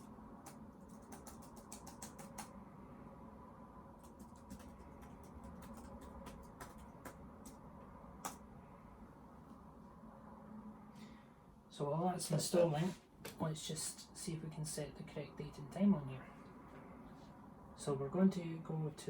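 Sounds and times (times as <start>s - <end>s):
faint steady hum: 0.0s - 19.0s
keyboard keystrokes: 0.4s - 2.5s, 4.0s - 7.6s.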